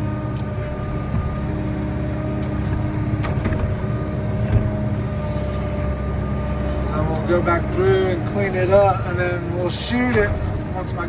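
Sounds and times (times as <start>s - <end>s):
excavator diesel engine running: 0.0s - 11.0s
short knocks: 0.8s - 5.0s, 10.0s - 10.9s.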